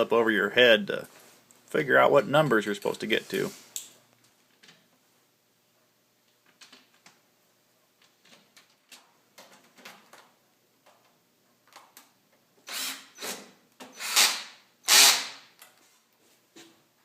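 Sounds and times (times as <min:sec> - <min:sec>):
faint clicks and handling noise: 0:06.2 - 0:12.5, 0:15.6 - 0:16.8
power drill driving screws: 0:12.6 - 0:15.5.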